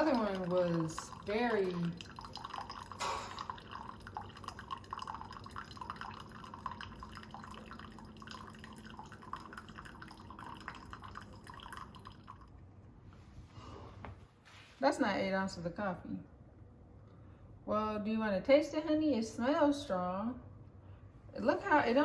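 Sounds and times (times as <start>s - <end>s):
coffee dripping into cup: 0.0s - 12.7s
faint machine hum: 0.0s - 22.0s.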